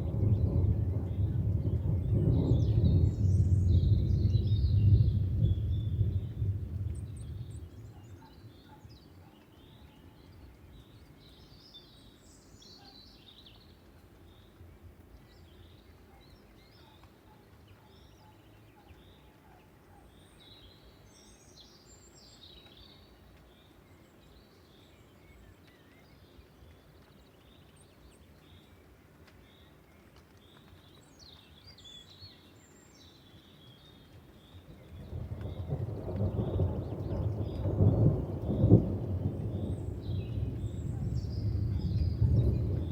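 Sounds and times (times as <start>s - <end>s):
distant storm noise: 0.0s - 8.8s, 34.5s - 42.9s
thunder rumble: 0.0s - 8.8s, 34.4s - 42.9s
small birds chirping: 0.0s - 42.9s.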